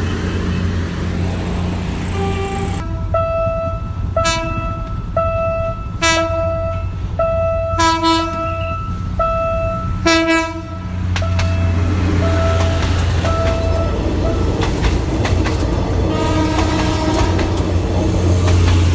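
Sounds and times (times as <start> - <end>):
low diesel rumble: 0.0 - 18.9
train horn short blasts: 2.1 - 14.0, 16.1 - 17.8.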